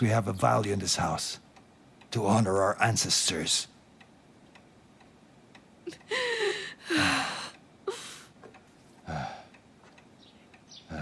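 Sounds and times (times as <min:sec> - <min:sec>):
person gasping and sighing: 0:05.9 - 0:08.4, 0:09.1 - 0:09.6.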